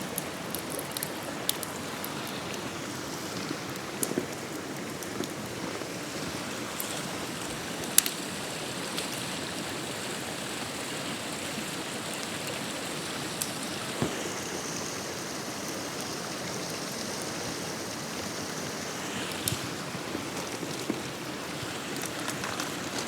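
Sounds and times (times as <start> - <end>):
fire hissing and crackling: 0.0 - 23.0
higher hiss: 13.3 - 16.4.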